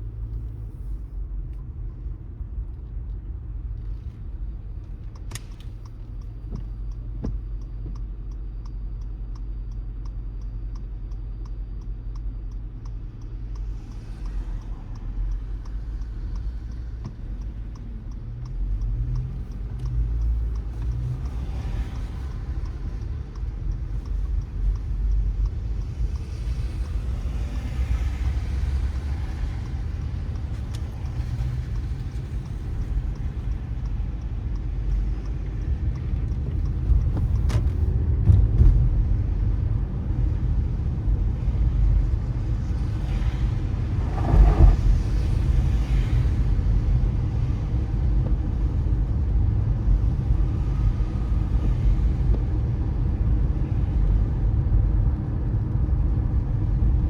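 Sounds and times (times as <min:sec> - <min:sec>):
car rumble: 0:00.0 - 0:57.0
car tyres hissing on wet road: 0:20.4 - 0:22.9, 0:24.9 - 0:33.4, 0:39.6 - 0:54.4
louder swish of passing car: 0:42.9 - 0:46.4.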